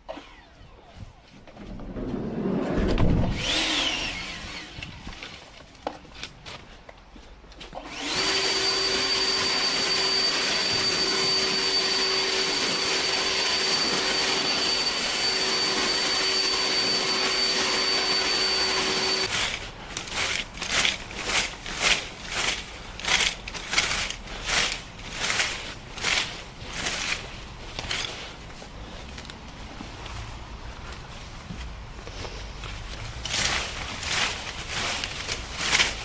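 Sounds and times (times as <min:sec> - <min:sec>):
power tool motor whining: 0:03.3 - 0:05.2, 0:07.8 - 0:19.3.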